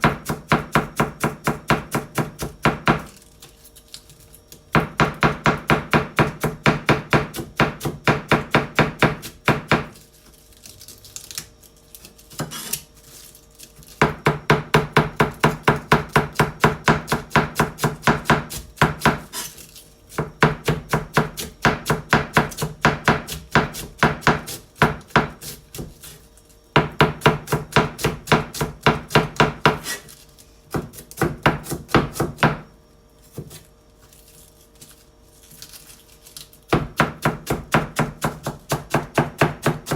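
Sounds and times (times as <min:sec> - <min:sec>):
knife shredding cabbage on board: 0:15.5 - 0:26.2, 0:27.2 - 0:32.4.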